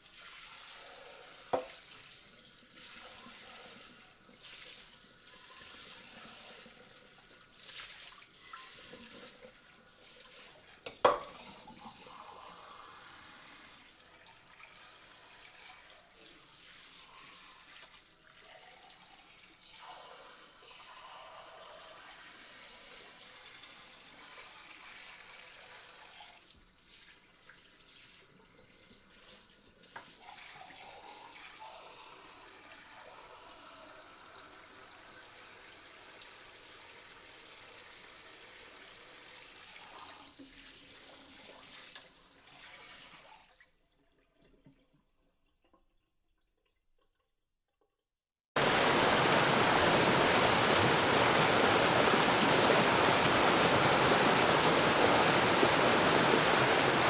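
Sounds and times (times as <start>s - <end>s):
tap water running into sink: 0.2s - 19.3s, 48.6s - 57.0s.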